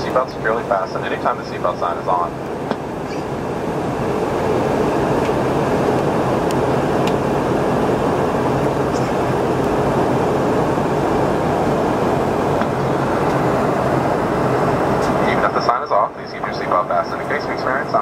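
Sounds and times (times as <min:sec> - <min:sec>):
airflow rushing over fuselage: 0:00.0 - 0:17.7
jet engines droning: 0:00.0 - 0:18.0
low cabin hum: 0:00.0 - 0:18.0.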